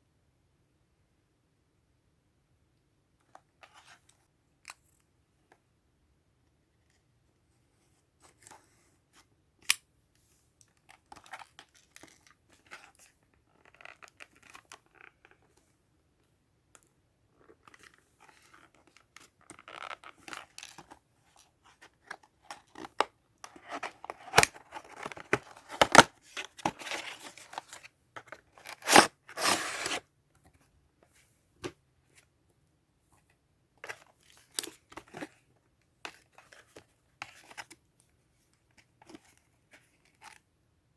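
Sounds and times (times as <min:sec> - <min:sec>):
packaging tearing: 0:28.8 - 0:30.0.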